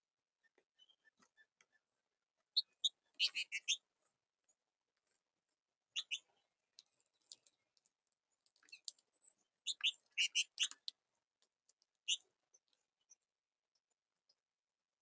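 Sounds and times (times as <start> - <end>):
small birds chipping: 2.5 - 3.9, 5.9 - 13.3.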